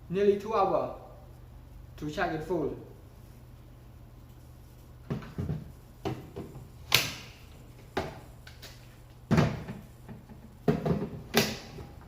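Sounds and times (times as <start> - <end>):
hard plastic items knocking and scraping: 9.3 - 12.0.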